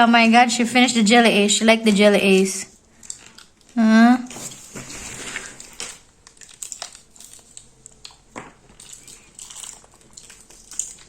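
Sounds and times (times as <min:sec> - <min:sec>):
plastic wrappers crinkling: 0:02.8 - 0:11.0.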